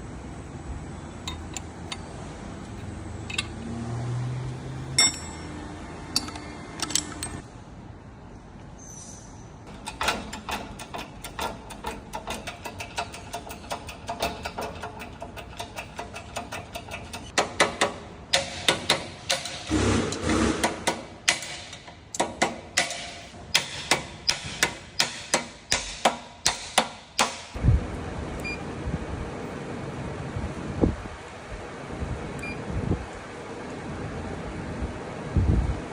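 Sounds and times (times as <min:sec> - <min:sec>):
hammer striking metal: 0:04.9 - 0:05.6, 0:09.8 - 0:27.6.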